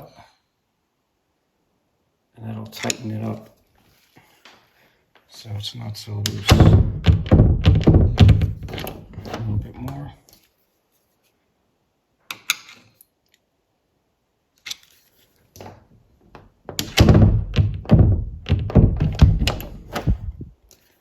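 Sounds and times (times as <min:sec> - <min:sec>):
door latch clicking: 0:06.3 - 0:09.5, 0:16.7 - 0:20.4
door thunking against latch: 0:06.3 - 0:09.6, 0:15.6 - 0:20.5.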